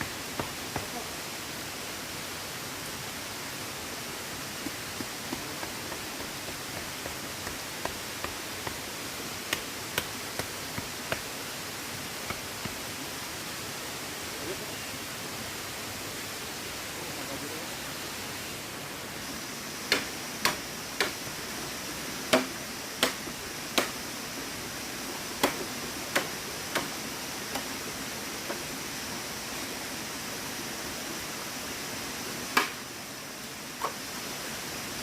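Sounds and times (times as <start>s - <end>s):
river water rushing: 0.0s - 35.0s
sharp knocks: 22.3s - 23.2s.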